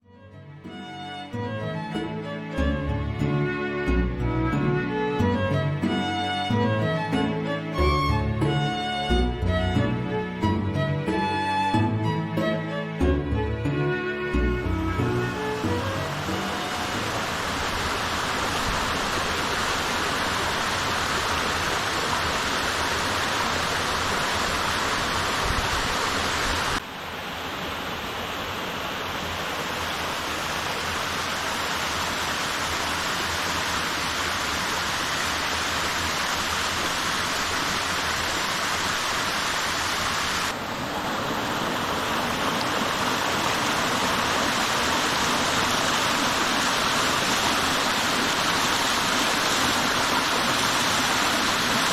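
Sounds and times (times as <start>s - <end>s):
waterfall rushing and splashing: 14.2s - 51.9s.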